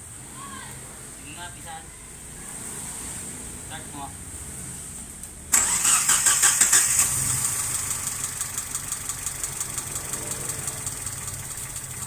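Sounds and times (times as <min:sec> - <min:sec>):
engine starting and idling roughly: 0:05.5 - 0:12.0.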